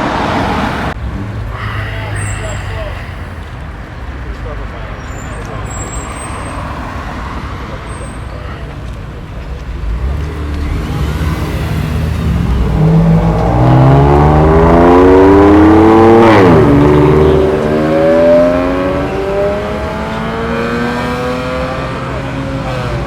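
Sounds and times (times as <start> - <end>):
car engine accelerating hard: 9.7 - 23.0.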